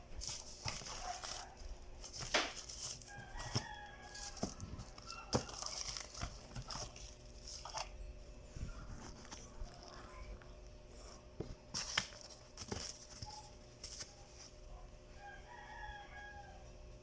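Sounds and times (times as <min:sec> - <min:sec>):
packaging clicks and crinkles: 0:00.0 - 0:08.0, 0:08.8 - 0:10.5, 0:11.4 - 0:14.6.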